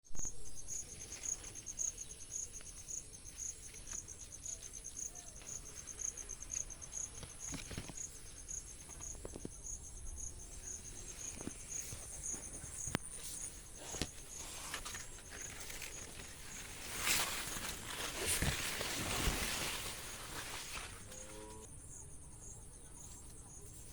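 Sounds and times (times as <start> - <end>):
insect chirping: 0.2 - 23.9
faint clicks and rustles: 1.0 - 9.8, 10.5 - 21.7.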